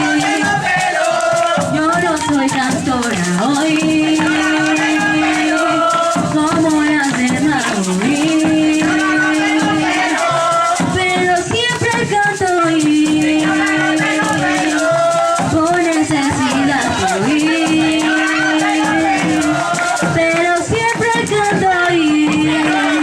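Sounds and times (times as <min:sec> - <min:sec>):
maracas shaking: 0:00.0 - 0:23.0.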